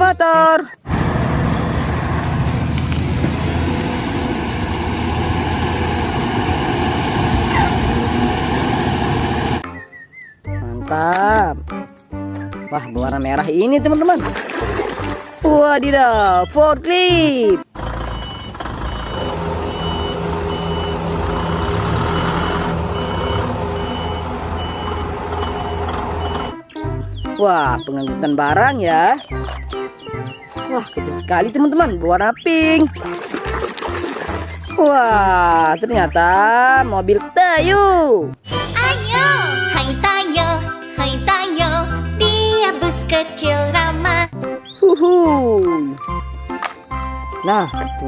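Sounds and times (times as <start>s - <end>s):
heavy vehicle engine rumbling: 0.8s - 9.6s, 17.5s - 27.2s
reversing alarm beeping: 17.9s - 26.6s.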